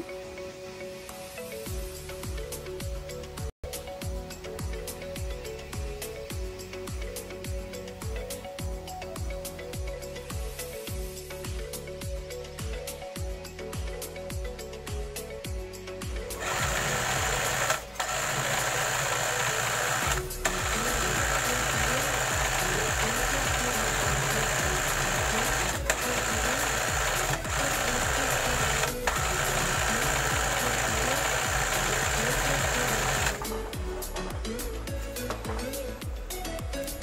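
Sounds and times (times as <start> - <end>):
electric sewing machine stitching: 16.3 - 33.8.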